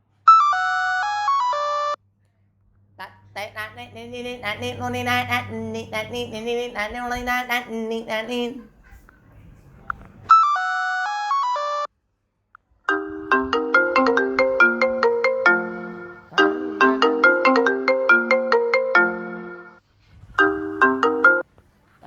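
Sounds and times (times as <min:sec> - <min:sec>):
melodic phone ringtone: 0:12.9 - 0:19.8, 0:20.4 - 0:21.4.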